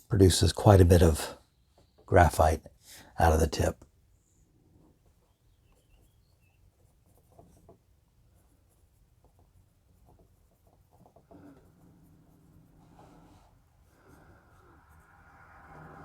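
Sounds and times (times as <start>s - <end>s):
pencil scratching on paper: 5.0s - 16.0s.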